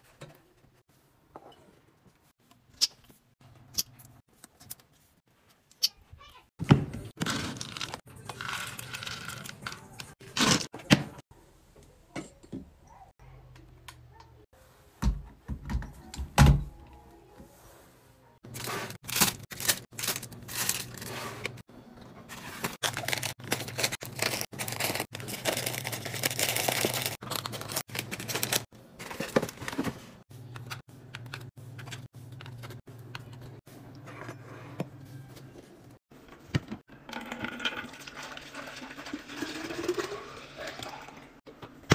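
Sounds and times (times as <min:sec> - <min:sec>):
plastic containers clicking and crinkling: 0:22.4 - 0:33.6.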